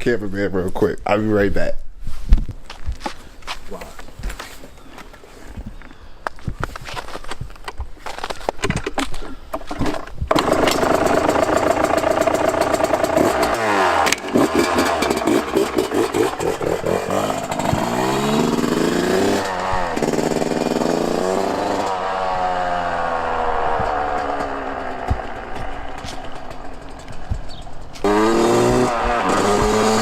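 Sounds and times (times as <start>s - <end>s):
two-stroke engine revving: 10.3s - 30.0s.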